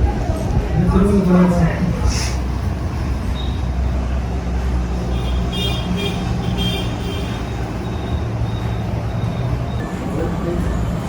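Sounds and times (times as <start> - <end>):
low engine rumble: 0.0 - 11.0.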